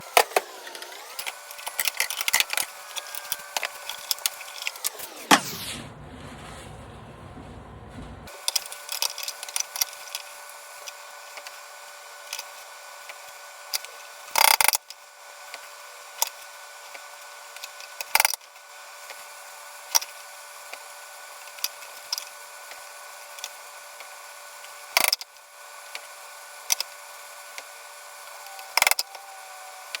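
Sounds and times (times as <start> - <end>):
steady shop hum: 0.0 - 16.8.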